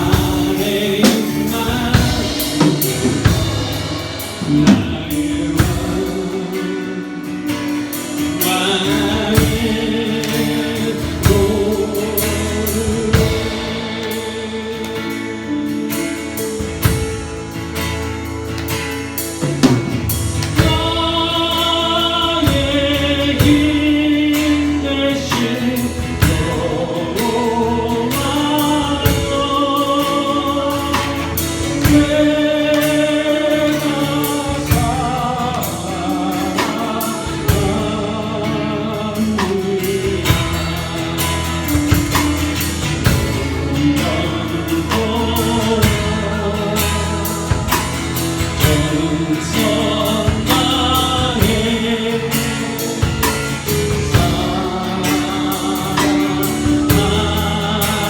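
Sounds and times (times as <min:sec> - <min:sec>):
drum kit: 0:00.0 - 0:58.0
guitar: 0:00.0 - 0:58.0
person singing with vibrato: 0:00.0 - 0:58.0.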